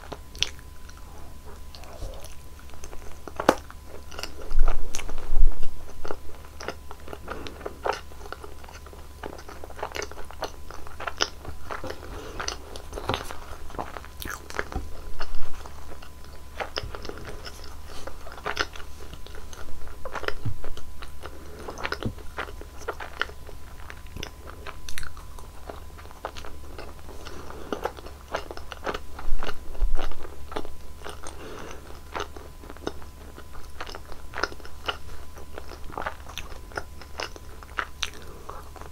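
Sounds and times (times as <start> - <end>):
crisp bites and chewing: 6.0 - 27.1.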